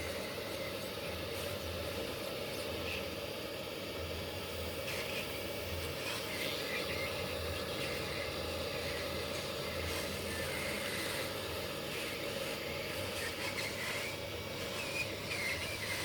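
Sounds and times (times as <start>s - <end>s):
low mechanical hum: 0.0s - 16.0s.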